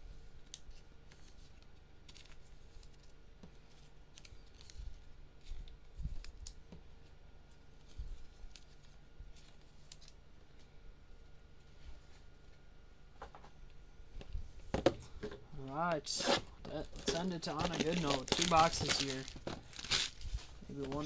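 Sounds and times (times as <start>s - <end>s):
cardboard and wrappers clicking: 16.7s - 21.0s.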